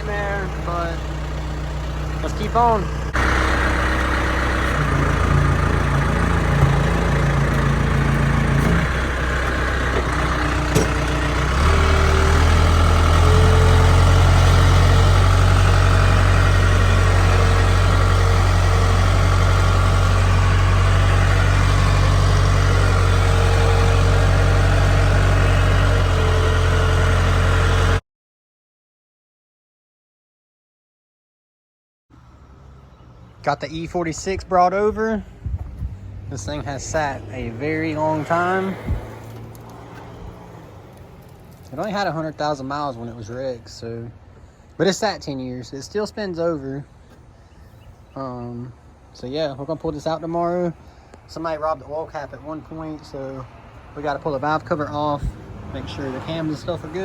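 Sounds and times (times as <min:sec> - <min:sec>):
forklift engine running: 0:00.0 - 0:28.0, 0:35.3 - 0:44.8, 0:51.1 - 0:57.0.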